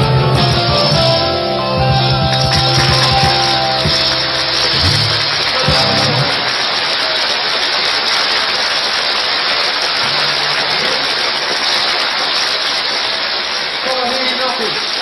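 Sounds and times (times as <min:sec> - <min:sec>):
band low notes: 0:00.0 - 0:06.5
audience applauding and cheering: 0:00.0 - 0:15.0.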